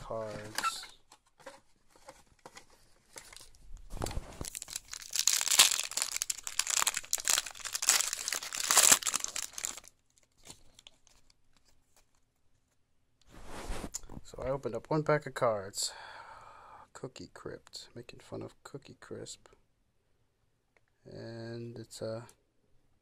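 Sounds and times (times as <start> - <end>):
card wrapper crinkling and tearing: 1.9 - 12.2.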